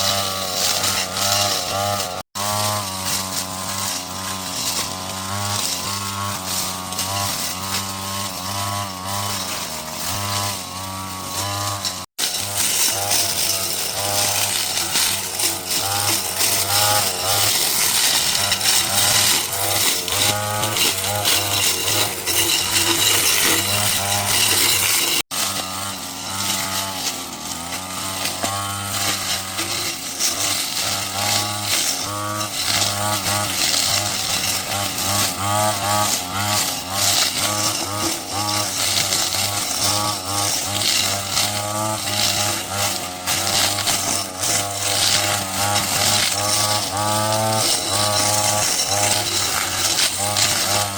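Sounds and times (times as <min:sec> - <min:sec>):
small two-stroke engine revving: 0:00.0 - 0:50.9.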